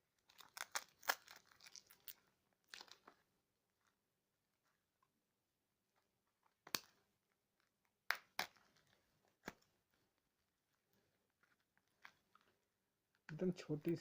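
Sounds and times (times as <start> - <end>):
packaging crackling and snapping: 0.2 - 3.2.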